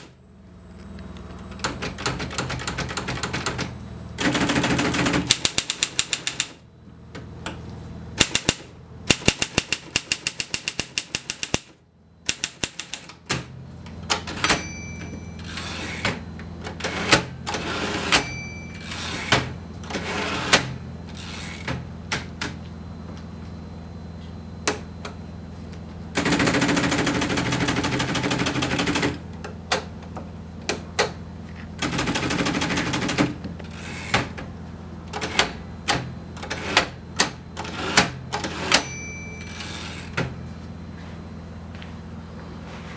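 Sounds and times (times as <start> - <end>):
typewriter keys clicking: 1.5 - 6.6, 8.2 - 11.7, 12.3 - 13.5
typewriter rattling: 1.6 - 6.6, 8.2 - 11.7, 26.2 - 29.2, 31.8 - 34.2
typewriter bell ring: 14.3 - 16.0, 17.9 - 19.3, 38.5 - 40.2.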